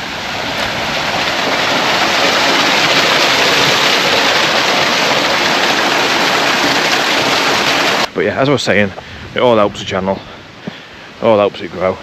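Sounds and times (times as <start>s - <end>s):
waterfall rushing: 0.0s - 8.2s.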